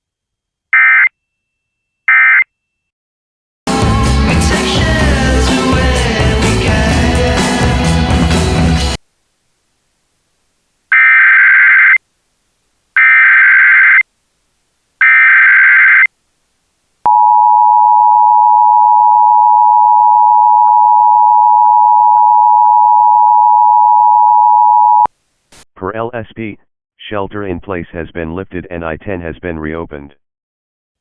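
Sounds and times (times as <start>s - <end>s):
background music: 3.7s - 9.0s
two-tone attention signal: 17.1s - 25.1s.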